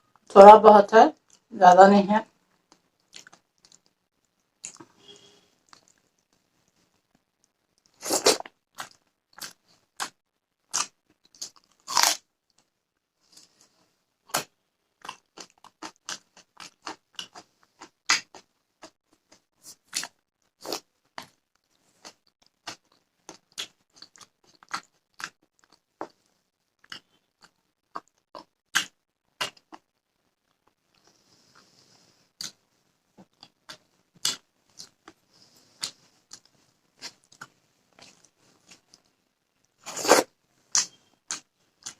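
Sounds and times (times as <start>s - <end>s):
wet chewing: 2.7s - 7.1s, 14.3s - 29.9s, 33.2s - 39.1s
crunching bites: 8.1s - 12.2s.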